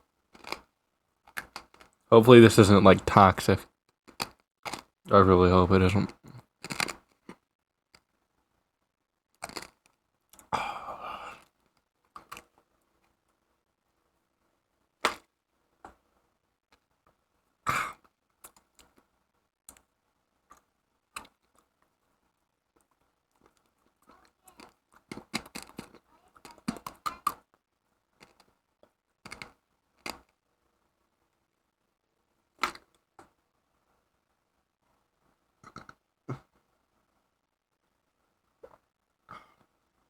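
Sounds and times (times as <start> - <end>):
mouth chewing clicks and smacks: 0.4 - 0.7, 1.3 - 1.9, 4.1 - 4.9, 6.1 - 7.4, 9.4 - 10.5, 17.9 - 19.0, 19.7 - 19.9, 20.5 - 21.7, 22.8 - 27.4, 35.6 - 36.5.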